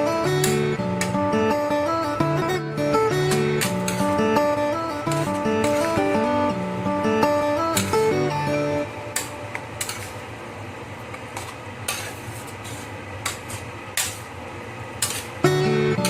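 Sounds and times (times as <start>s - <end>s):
metal utensils clinking on cookware: 3.2s - 4.3s, 5.0s - 6.2s, 7.7s - 8.1s, 9.1s - 10.2s, 11.4s - 14.3s, 15.0s - 15.4s.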